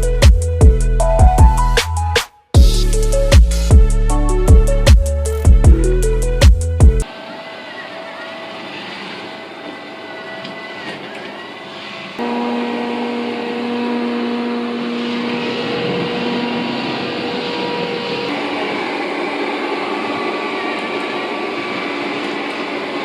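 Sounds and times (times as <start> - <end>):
robot vacuum cleaner whirring: 7.1 - 23.0
steady hum: 12.2 - 23.0.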